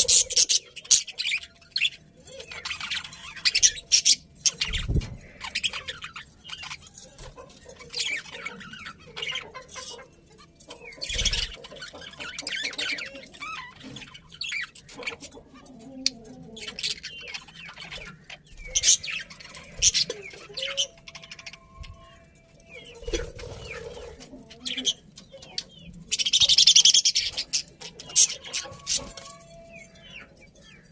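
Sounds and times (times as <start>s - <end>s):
budgerigars chirping: 0.0s - 30.9s.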